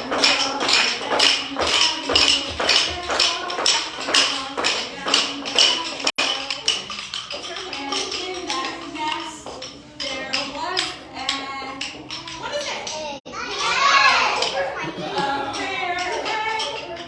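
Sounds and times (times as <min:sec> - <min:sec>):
shaken percussion beat: 0:00.0 - 0:13.1
children's song playing: 0:00.0 - 0:17.0.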